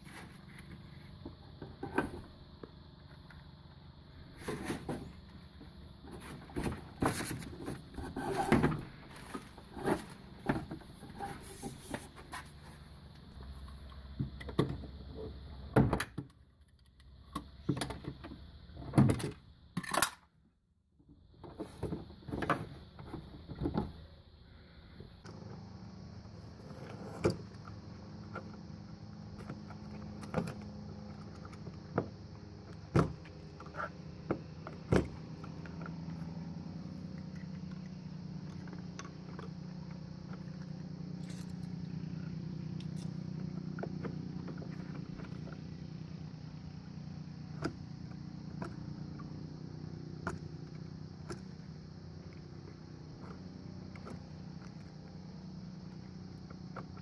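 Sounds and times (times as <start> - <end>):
low engine-like hum: 23.4 - 57.0.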